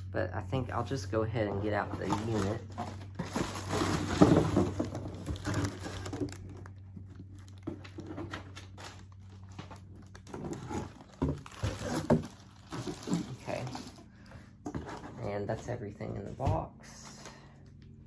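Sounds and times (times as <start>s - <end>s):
cardboard and plastic packaging rustling: 0.6s - 17.8s.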